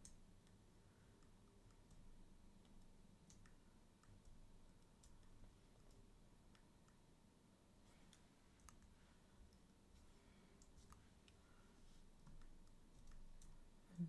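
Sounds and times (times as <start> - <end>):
computer mouse clicks: 0.0 - 0.6, 1.2 - 7.0, 8.1 - 9.7, 12.2 - 13.6.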